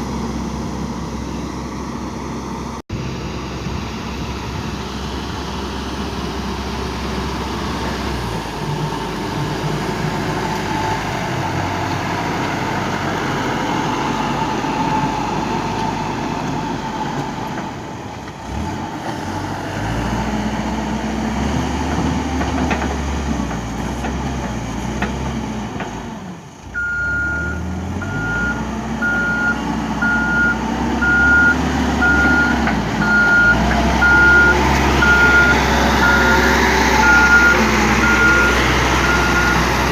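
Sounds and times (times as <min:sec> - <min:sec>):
diesel engine running: 0:00.0 - 0:39.9
reverse alarm beeping: 0:26.8 - 0:39.7.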